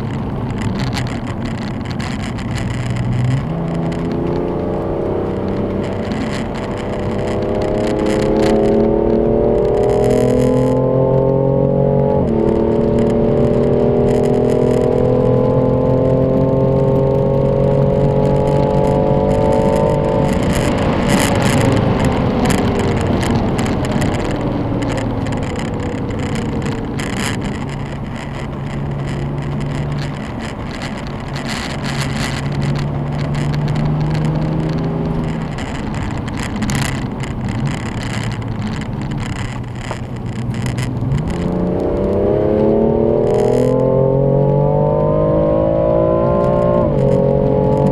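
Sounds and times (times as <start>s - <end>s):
car engine revving: 0.0s - 47.9s.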